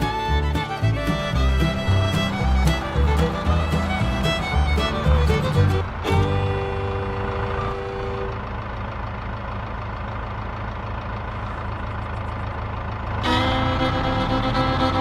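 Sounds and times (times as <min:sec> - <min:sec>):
fiddle music: 0:00.0 - 0:08.8, 0:13.2 - 0:15.0
engine idling: 0:00.0 - 0:15.0.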